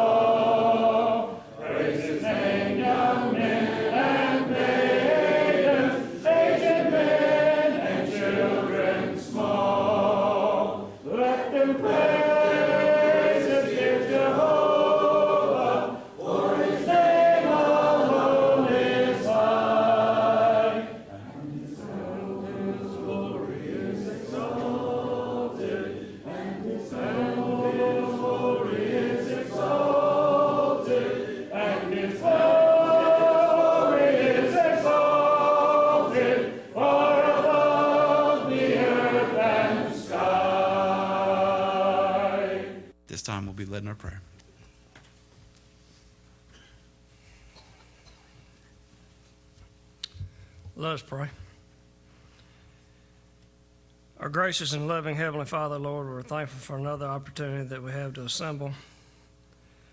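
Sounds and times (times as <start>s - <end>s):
congregation singing a hymn: 0.0s - 43.0s.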